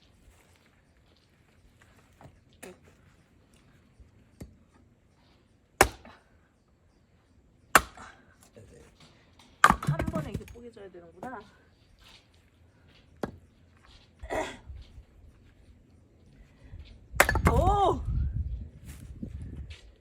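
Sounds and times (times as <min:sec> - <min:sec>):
axe splitting firewood: 0:05.8 - 0:06.2, 0:07.7 - 0:10.6, 0:17.2 - 0:17.8.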